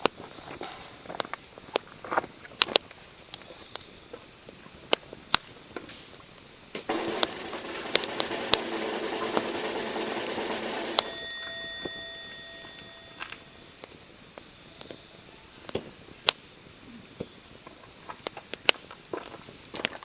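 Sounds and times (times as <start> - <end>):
sharp metallic clink: 11.0 - 13.6.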